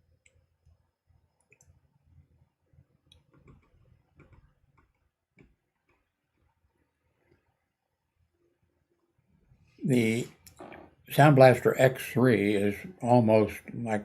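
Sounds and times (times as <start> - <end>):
computer mouse clicking: 3.1 - 6.1.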